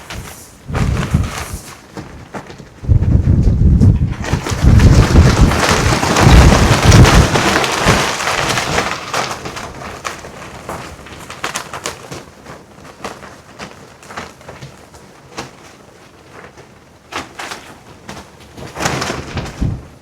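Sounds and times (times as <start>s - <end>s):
wind buffeting microphone: 0.0s - 8.8s, 19.3s - 20.0s
clothing flapping and rustling: 0.0s - 20.0s.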